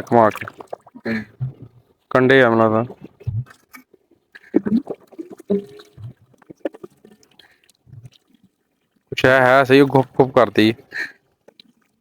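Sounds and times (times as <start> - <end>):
mud and water squelching: 0.0 - 1.9, 2.7 - 10.3.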